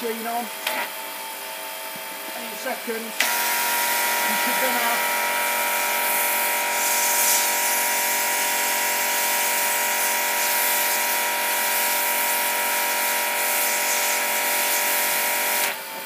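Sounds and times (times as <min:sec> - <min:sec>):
pressure washer motor humming: 0:02.4 - 0:16.0
foam lance spraying hiss: 0:05.7 - 0:12.4.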